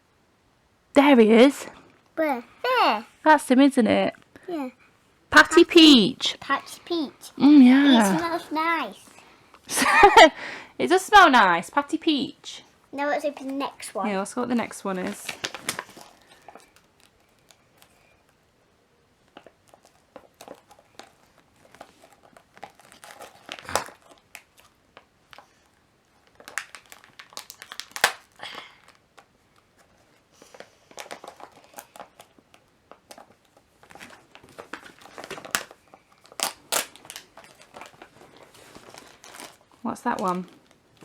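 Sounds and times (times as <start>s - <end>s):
plastic packet crinkling: 13.0s - 18.1s, 19.2s - 41.0s
plastic tearing crackles: 14.6s - 18.1s, 19.2s - 41.0s.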